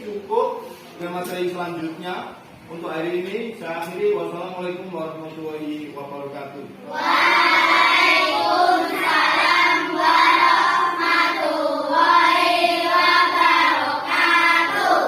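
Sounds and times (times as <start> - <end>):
children chanting in unison: 6.9 - 15.0.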